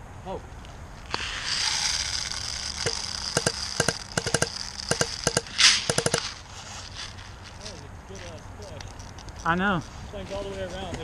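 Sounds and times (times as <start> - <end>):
brief hiss: 1.1 - 3.6, 4.4 - 7.8
airsoft guns firing: 2.7 - 6.4.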